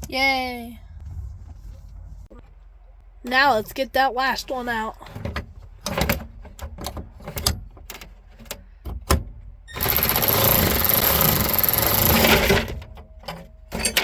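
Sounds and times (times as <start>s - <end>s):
power driver rattling: 9.8s - 14.0s.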